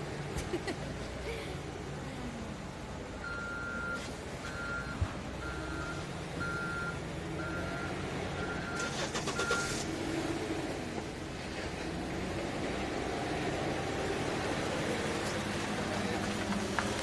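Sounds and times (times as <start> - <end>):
low engine rumble: 0.0 - 17.0
backup alarm beeping: 3.2 - 9.8.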